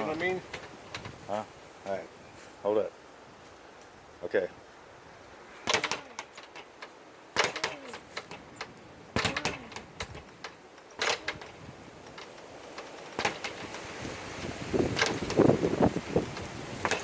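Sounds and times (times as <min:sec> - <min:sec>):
speed bag rattling: 0:07.4 - 0:08.5, 0:09.2 - 0:10.4.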